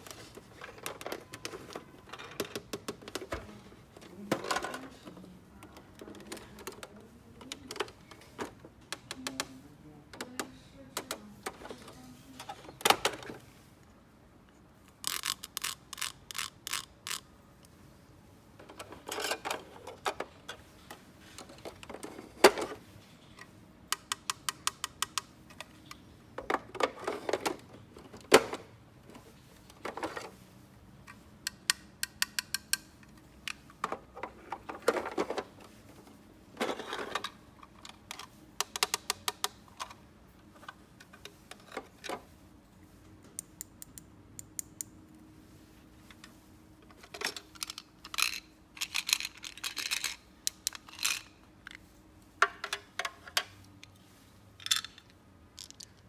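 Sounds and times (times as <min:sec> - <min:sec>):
plastic toys clicking: 0:00.2 - 0:03.4, 0:15.0 - 0:17.3, 0:23.9 - 0:27.6, 0:31.5 - 0:35.5, 0:36.6 - 0:40.0, 0:47.1 - 0:51.8, 0:54.6 - 0:56.0.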